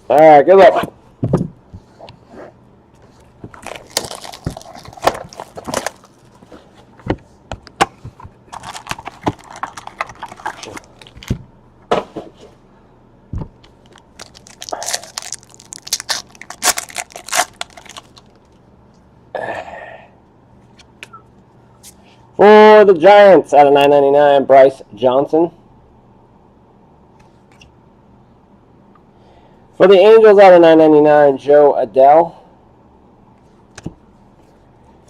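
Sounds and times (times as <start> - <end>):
wrappers tearing and crinkling: 3.5 - 6.5, 8.5 - 11.4, 13.8 - 18.6.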